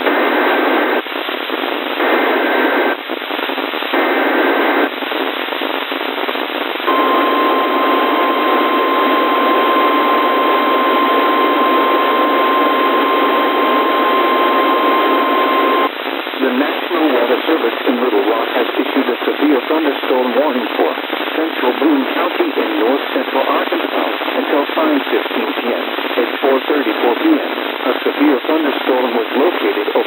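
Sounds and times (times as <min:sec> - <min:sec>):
radio static hiss: 0:00.0 - 0:30.0
steady warning alarm tone: 0:06.9 - 0:15.9.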